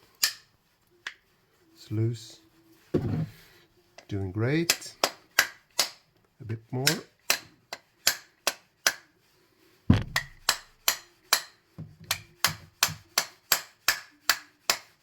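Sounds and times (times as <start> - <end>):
heavier hammer blow: 9.9 - 10.6
hammer tapping metal pin: 9.9 - 11.5.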